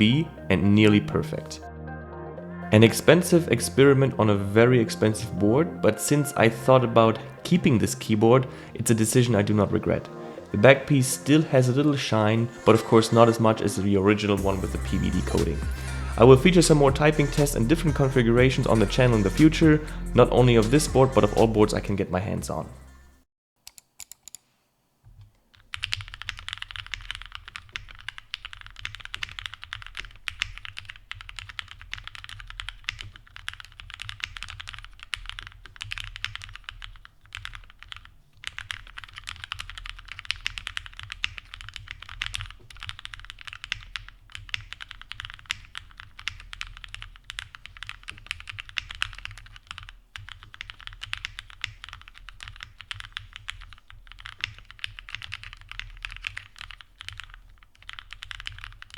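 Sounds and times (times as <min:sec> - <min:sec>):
fast typing on mechanical keyboard: 0:25.5 - 0:58.9.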